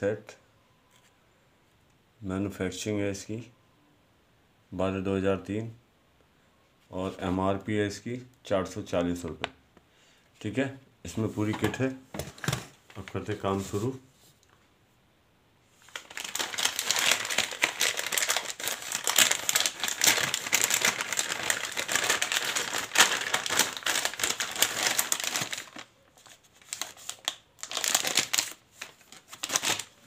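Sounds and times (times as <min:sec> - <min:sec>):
plastic packaging crinkling: 0:15.8 - 0:30.0.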